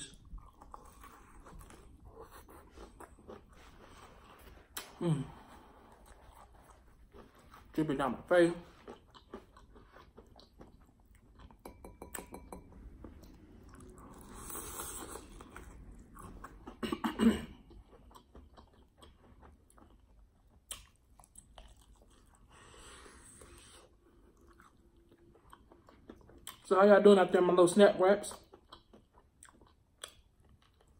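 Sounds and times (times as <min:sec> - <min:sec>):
wet chewing and smacking: 0:00.1 - 0:05.0, 0:05.7 - 0:07.8, 0:08.6 - 0:11.8, 0:17.6 - 0:26.7, 0:28.3 - 0:30.9
breathing: 0:22.4 - 0:24.0.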